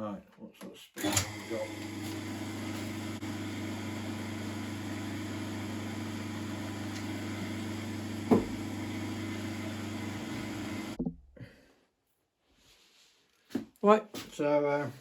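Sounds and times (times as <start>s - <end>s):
lathe motor humming: 1.0s - 11.0s.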